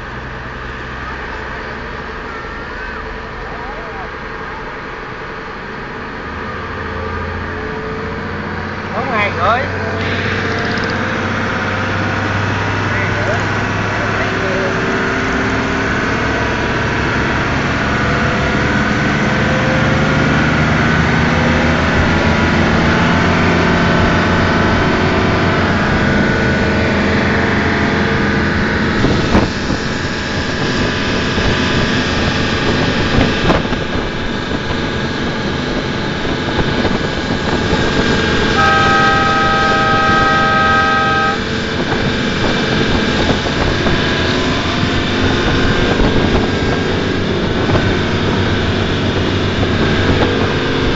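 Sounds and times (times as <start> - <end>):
boat engine running: 0.0 - 50.9
water noise: 0.0 - 50.9
steady multi-pitch tone: 21.1 - 50.6.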